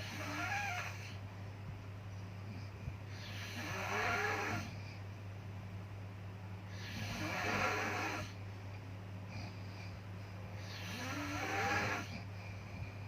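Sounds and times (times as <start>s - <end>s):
steady low hum: 0.0s - 13.0s
person snoring: 6.8s - 8.4s, 10.6s - 12.2s.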